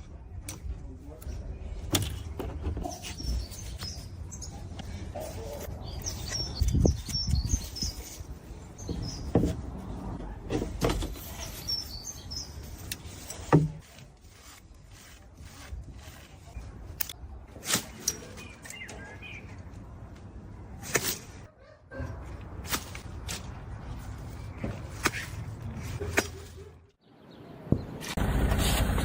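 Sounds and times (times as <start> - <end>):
birds chirping: 1.1 - 13.8, 16.4 - 20.8, 23.8 - 28.2
knocks and thuds of work: 8.8 - 11.4.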